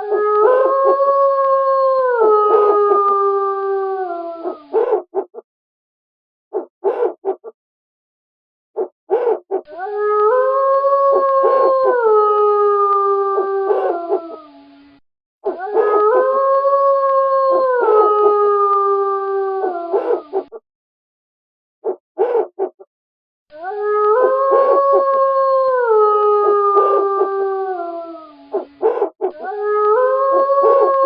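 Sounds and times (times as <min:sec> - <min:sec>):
wolves yipping: 0:00.0 - 0:00.7, 0:04.5 - 0:05.4, 0:06.5 - 0:07.5, 0:08.8 - 0:09.8, 0:13.7 - 0:14.4, 0:15.4 - 0:16.2, 0:19.9 - 0:20.6, 0:21.8 - 0:22.9, 0:24.2 - 0:25.0, 0:26.8 - 0:27.1, 0:28.5 - 0:29.6
wolves howling in chorus: 0:00.0 - 0:05.0, 0:09.1 - 0:14.7, 0:15.5 - 0:20.6, 0:23.6 - 0:31.0.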